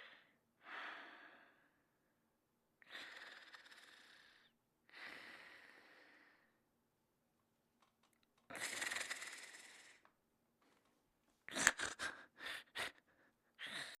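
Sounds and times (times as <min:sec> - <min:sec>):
cartoon snoring: 0:08.6 - 0:10.0.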